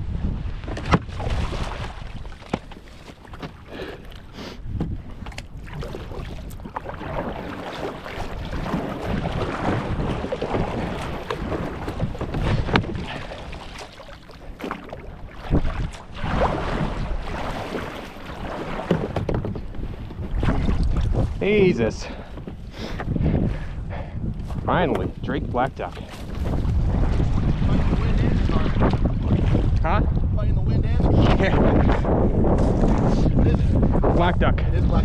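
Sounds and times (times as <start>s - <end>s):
water sloshing against hull: 0.0s - 30.3s
wind rumbling on microphone: 0.0s - 35.0s
paddle splashes: 0.3s - 23.1s, 25.0s - 29.9s.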